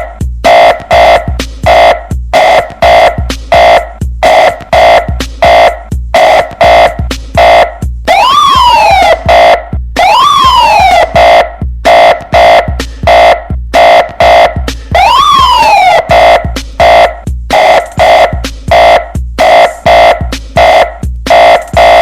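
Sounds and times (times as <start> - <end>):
chopped tone blasts: 0.0 - 22.0
deep bass thumps: 0.0 - 22.0
electronic siren sweep: 0.0 - 22.0.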